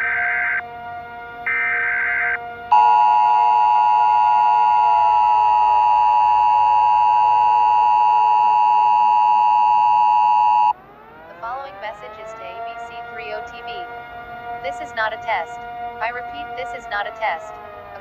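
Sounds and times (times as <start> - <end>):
two steady alert tones: 1.5 - 10.7.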